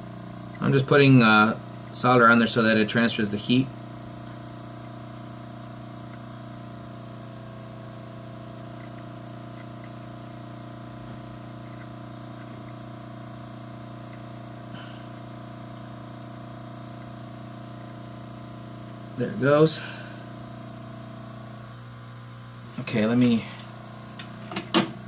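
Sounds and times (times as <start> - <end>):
low electrical hum: 0.0 - 25.0
faint small ticks: 6.1 - 6.6, 8.8 - 10.0.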